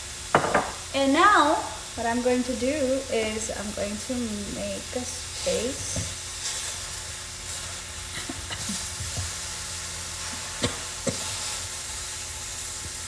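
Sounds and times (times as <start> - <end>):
vegetables sizzling in a pan: 0.0 - 13.0
utensil knocking on pan: 0.3 - 0.8
utensil stirring in a pan: 0.3 - 13.0.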